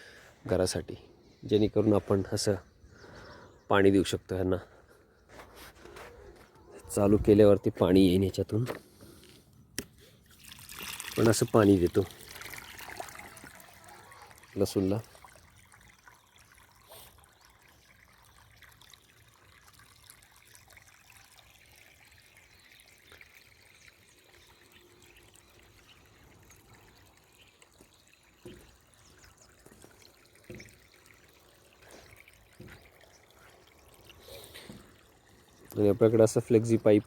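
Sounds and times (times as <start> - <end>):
water trickling from pipe: 7.9 - 37.0.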